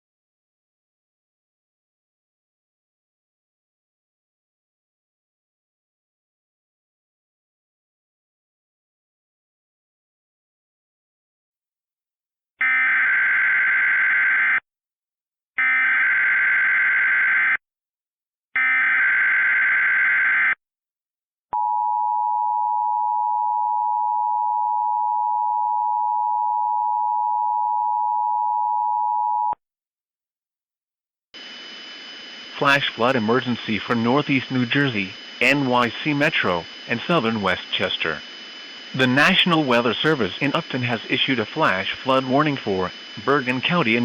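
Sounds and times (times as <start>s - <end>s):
digital data tone bursts: 31.4s - 44.0s.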